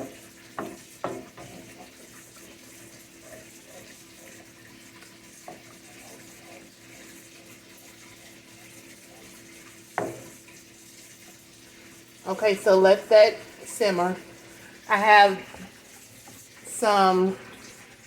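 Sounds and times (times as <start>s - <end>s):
spoon knocking pan: 0.0s - 4.0s, 9.9s - 10.4s
sauce simmering and bubbling: 0.0s - 18.0s.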